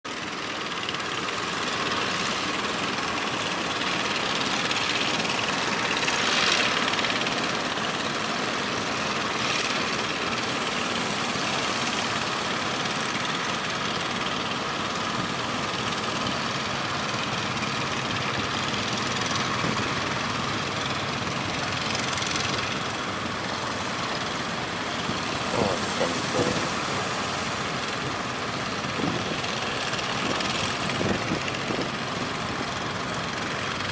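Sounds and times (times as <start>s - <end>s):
boat engines running: 0.1s - 33.9s
strong wind: 24.4s - 32.6s.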